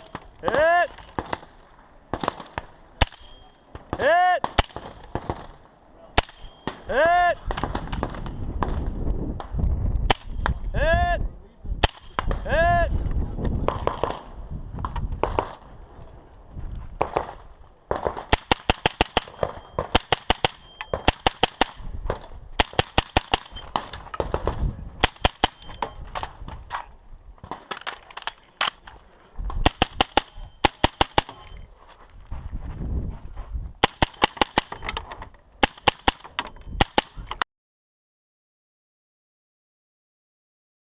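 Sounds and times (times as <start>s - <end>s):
rifle gunfire: 2.1s - 5.6s, 17.0s - 25.9s, 29.6s - 31.4s, 33.8s - 34.8s, 35.6s - 37.2s.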